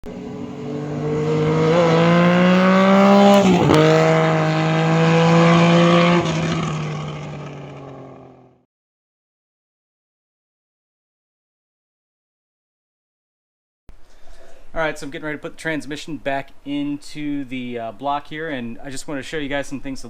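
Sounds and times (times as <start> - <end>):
vehicle engine running: 0.0 - 8.6.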